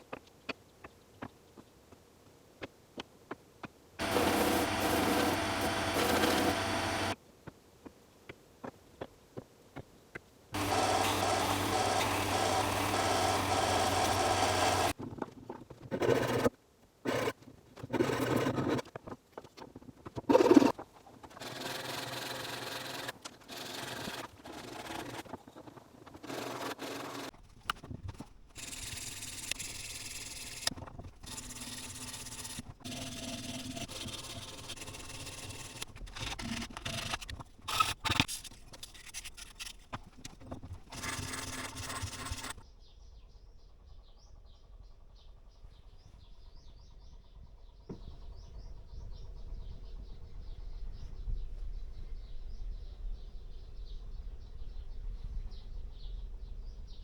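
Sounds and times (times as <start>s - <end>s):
sanding wood: 4.0s - 7.2s, 10.6s - 14.9s, 28.6s - 39.8s, 40.8s - 42.6s.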